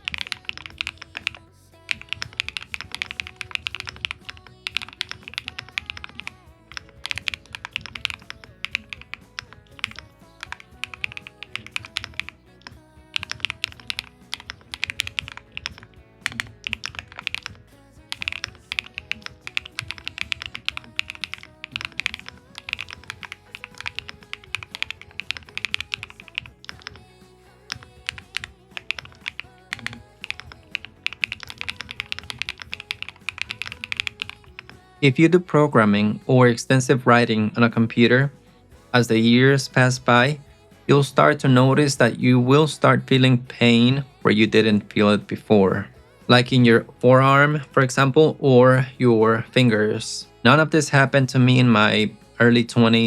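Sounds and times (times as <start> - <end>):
keyboard key clicks: 0.0 - 12.3, 13.2 - 27.0, 27.7 - 34.8
background music: 0.0 - 53.0.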